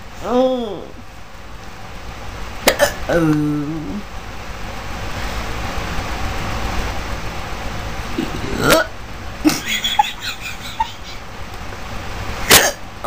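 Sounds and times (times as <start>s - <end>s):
steady rushing noise: 3.7s - 13.0s.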